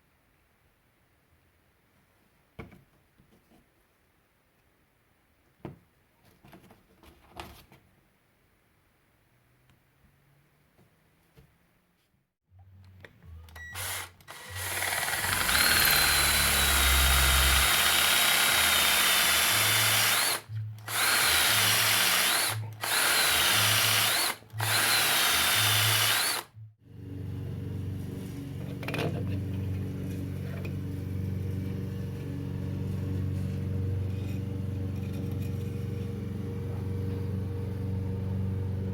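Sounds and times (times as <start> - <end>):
power drill boring into wood: 13.8 - 26.5.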